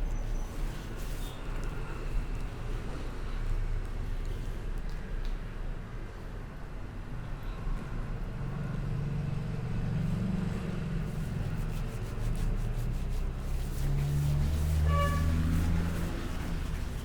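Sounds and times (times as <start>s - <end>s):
traffic engines rumbling: 5.5s - 17.0s.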